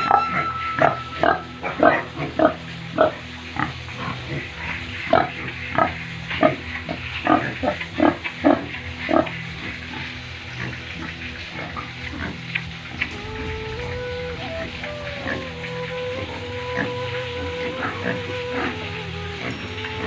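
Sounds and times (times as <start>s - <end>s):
low hum: 0.0s - 20.0s
pigs grunting: 0.8s - 13.0s.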